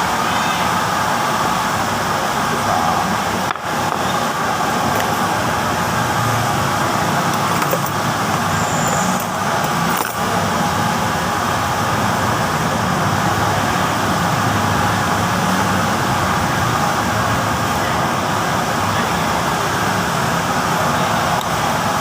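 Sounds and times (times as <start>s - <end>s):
steady rushing noise: 0.0s - 22.0s.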